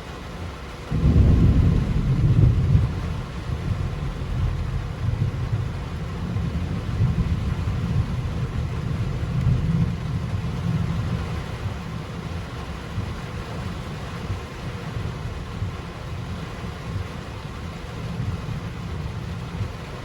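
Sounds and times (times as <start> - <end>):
heavy rain hissing: 0.0 - 20.0
deep low rumble: 0.9 - 11.2.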